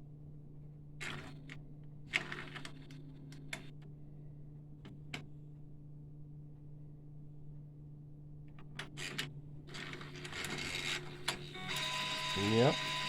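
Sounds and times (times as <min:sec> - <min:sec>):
mechanical whirring and rubbing: 0:09.0 - 0:13.0
printer low hum: 0:09.1 - 0:13.0.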